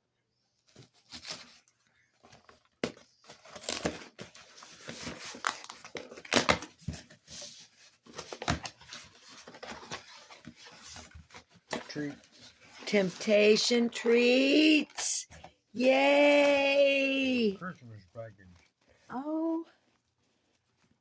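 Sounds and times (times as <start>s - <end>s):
package packaging tearing: 2.8s - 6.8s.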